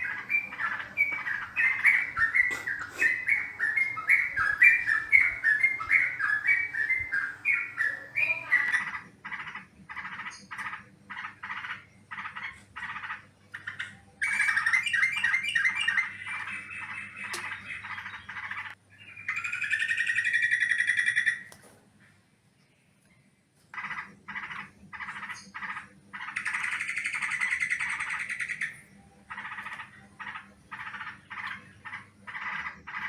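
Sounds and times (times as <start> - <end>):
bulbul calling: 0.0 - 8.7.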